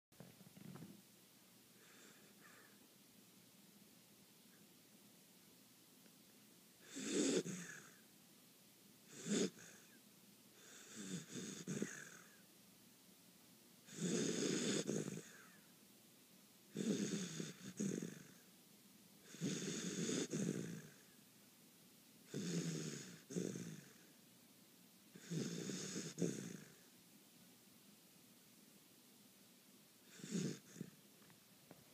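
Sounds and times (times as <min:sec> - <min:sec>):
quiet breathing: 0:01.6 - 0:03.0, 0:09.0 - 0:12.5, 0:13.8 - 0:15.8
person snoring: 0:06.8 - 0:08.0, 0:09.1 - 0:10.0, 0:10.6 - 0:12.4, 0:13.9 - 0:15.6, 0:16.8 - 0:18.4, 0:19.3 - 0:21.0, 0:22.3 - 0:24.0, 0:25.2 - 0:26.8, 0:30.1 - 0:31.0.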